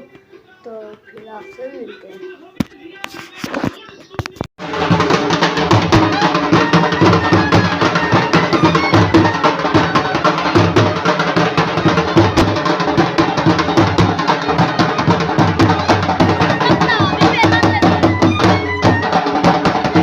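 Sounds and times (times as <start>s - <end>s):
loud music with drums: 4.6s - 20.0s.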